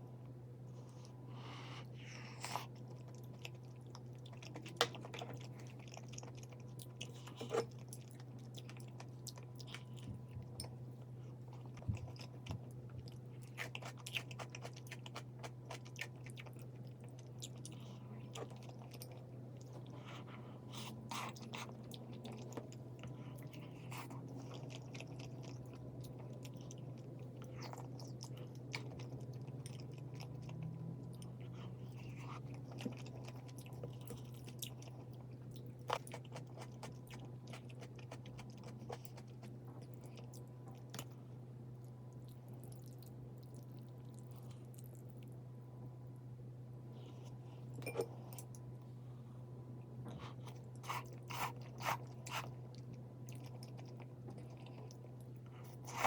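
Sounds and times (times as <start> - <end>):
steady low hum: 0.0 - 56.0
person chewing food: 0.8 - 41.2, 41.8 - 45.4, 50.0 - 56.0.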